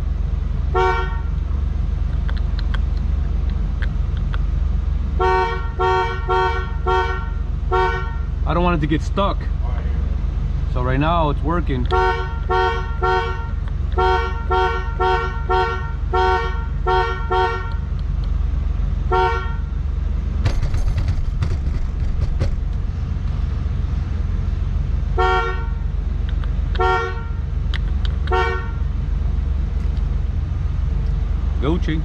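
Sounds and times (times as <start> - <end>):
two-tone car horn beeps: 0.7 - 1.4, 5.2 - 8.4, 11.9 - 17.9, 19.1 - 19.8, 25.1 - 25.8, 26.8 - 27.5, 28.3 - 28.9.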